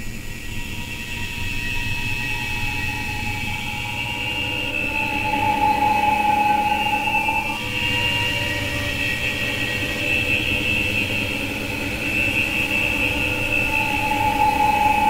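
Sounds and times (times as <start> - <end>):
sustained electronic tones: 2.6 - 8.2, 11.2 - 15.0.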